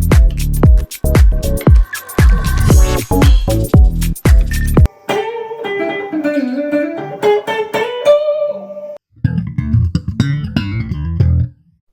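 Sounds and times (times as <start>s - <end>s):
electric guitar notes: 4.9s - 11.4s.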